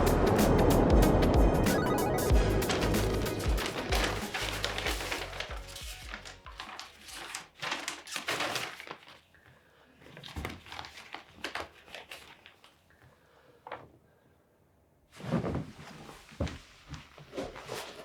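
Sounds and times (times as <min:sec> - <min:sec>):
soft knocks and rustles: 0:15.2 - 0:17.7.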